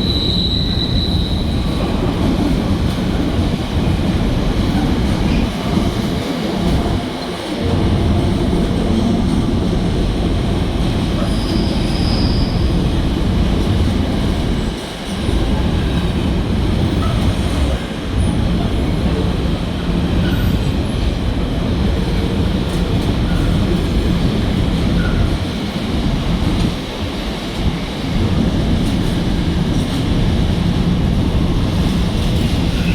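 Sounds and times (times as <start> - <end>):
train rumbling on rails: 0.0 - 32.9.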